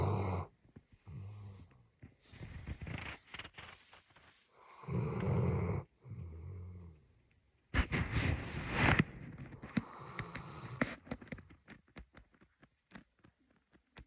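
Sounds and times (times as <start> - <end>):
dog snoring: 0.0 - 7.2, 9.6 - 11.4.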